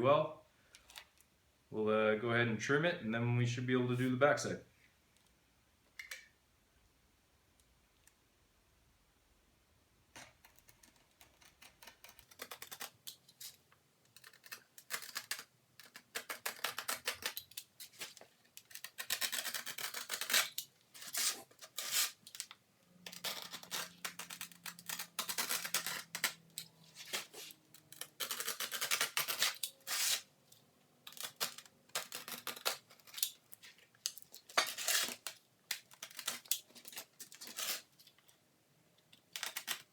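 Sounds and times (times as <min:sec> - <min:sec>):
sandpaper scraping cuts: 0:19.0 - 0:22.2, 0:28.2 - 0:30.3.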